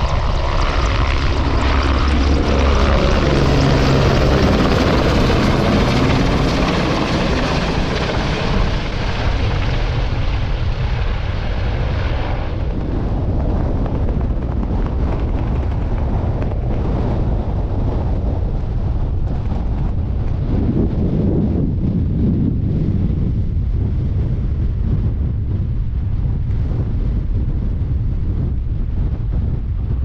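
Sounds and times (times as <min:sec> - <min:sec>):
helicopter engine and rotor: 0:00.0 - 0:22.8
wind buffeting microphone: 0:00.0 - 0:30.0.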